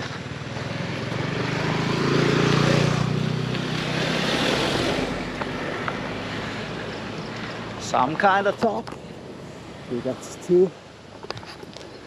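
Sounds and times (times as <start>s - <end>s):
vehicle engine passing: 0.4s - 8.0s.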